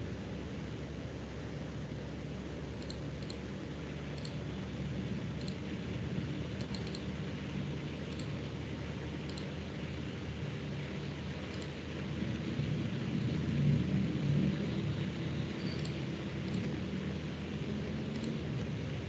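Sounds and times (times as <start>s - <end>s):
background noise with low hum: 0.0s - 19.0s
mouse and keyboard clicks: 2.8s - 3.4s, 4.2s - 4.4s, 5.4s - 5.6s, 6.6s - 7.1s, 8.1s - 8.3s, 9.3s - 9.5s, 15.6s - 16.7s.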